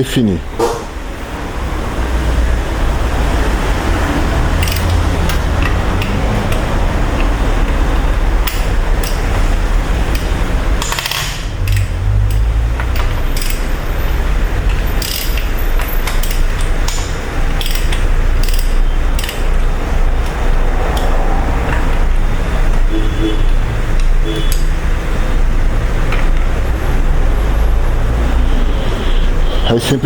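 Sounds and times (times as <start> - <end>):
ratchet wrench clicking: 4.4 - 7.8, 8.4 - 20.4.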